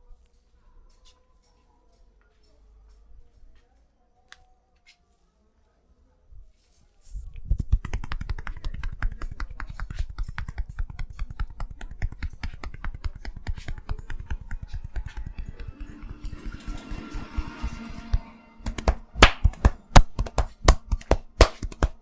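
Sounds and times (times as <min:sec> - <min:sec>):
hands tapping on a head: 0:07.6 - 0:15.7, 0:18.7 - 0:22.0.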